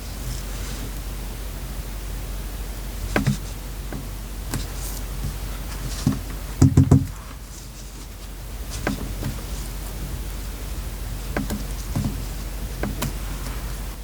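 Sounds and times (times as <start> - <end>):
steady hiss: 0.0 - 14.0
paper rustling: 4.5 - 10.0
quick knocks: 6.0 - 7.2.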